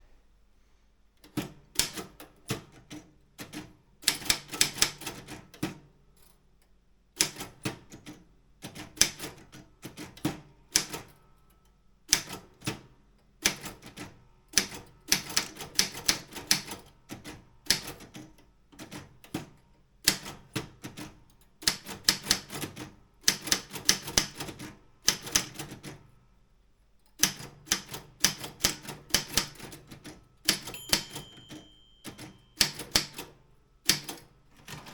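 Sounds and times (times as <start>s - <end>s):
typewriter key strikes: 27.2s - 34.9s.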